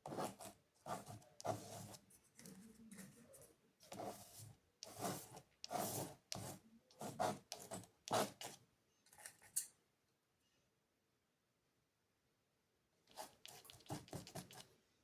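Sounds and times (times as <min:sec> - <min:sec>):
paintbrush scratching on surface: 0:00.0 - 0:08.6, 0:13.1 - 0:14.7.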